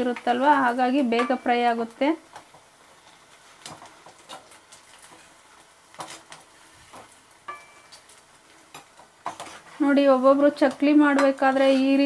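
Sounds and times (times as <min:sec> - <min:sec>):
food sizzling in hot oil: 0:00.0 - 0:12.0
stirring taps and clicks: 0:02.3 - 0:09.8, 0:10.5 - 0:12.0.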